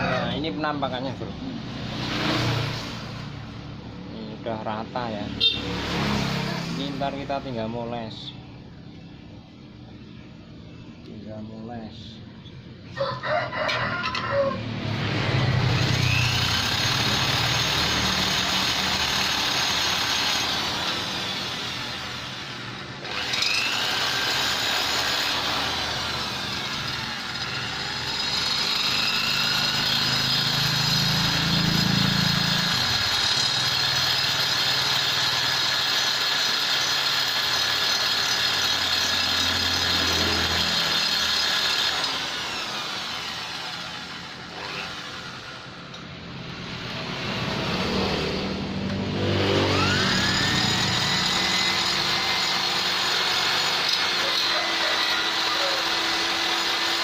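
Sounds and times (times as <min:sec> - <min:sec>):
die grinder whining on metal: 0:14.0 - 0:57.0.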